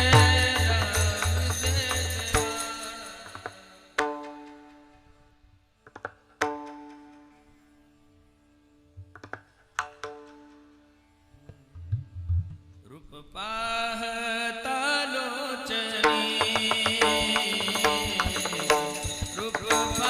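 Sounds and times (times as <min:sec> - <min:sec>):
devotional music with singing: 0:00.0 - 0:04.0, 0:12.9 - 0:20.0.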